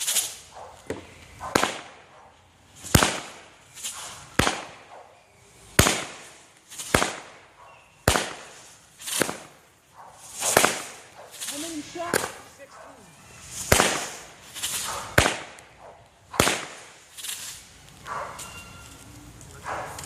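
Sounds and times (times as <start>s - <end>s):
firework bangs: 0.0s - 20.0s
firework hiss: 0.0s - 20.0s.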